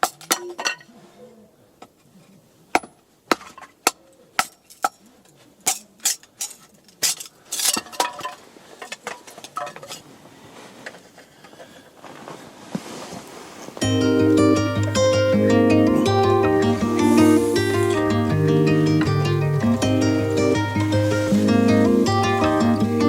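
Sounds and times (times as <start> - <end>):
cookware and utensils clinking: 0.0 - 0.9, 4.4 - 10.0.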